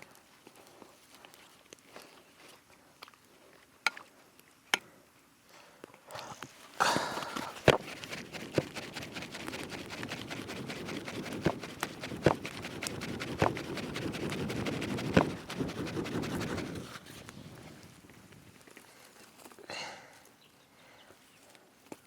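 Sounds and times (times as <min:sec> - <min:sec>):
scratching and rustling: 0:06.5 - 0:17.4.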